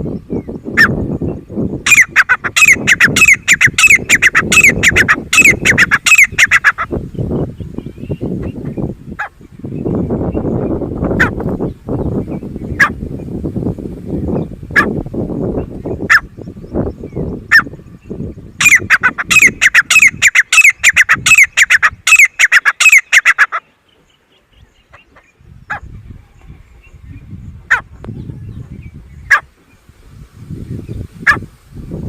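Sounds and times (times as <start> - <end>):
bird calling: 1.8 - 11.4, 15.8 - 29.5.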